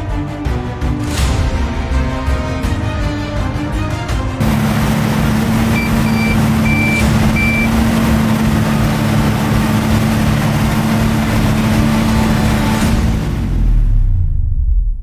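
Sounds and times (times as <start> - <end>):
short high warning beeps: 4.4 - 8.7
combine harvester engine running: 4.4 - 14.0.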